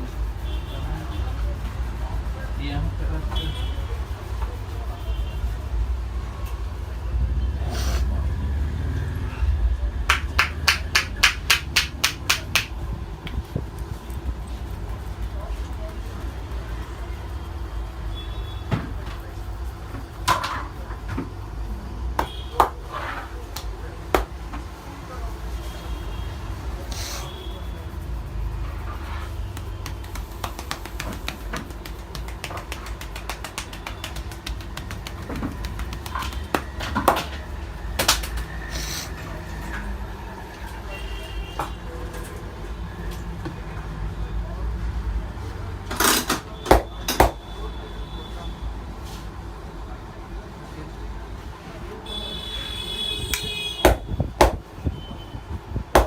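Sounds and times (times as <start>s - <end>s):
hands slapping head: 10.1s - 13.4s, 23.5s - 24.4s, 29.5s - 37.4s, 38.0s - 38.6s, 46.7s - 47.4s, 53.3s - 54.6s.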